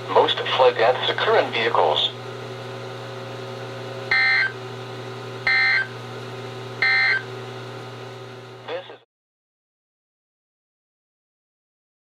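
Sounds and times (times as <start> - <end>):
radio hum and hiss: 0.0 - 2.2, 8.6 - 9.0
digital data tone bursts: 4.1 - 4.5, 5.5 - 5.9, 6.8 - 7.2.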